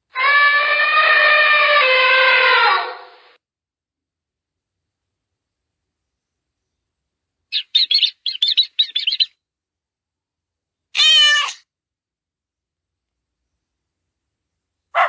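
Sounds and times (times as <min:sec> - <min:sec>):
bird chirping rapidly: 0:07.5 - 0:09.4
cat meow: 0:11.0 - 0:11.6.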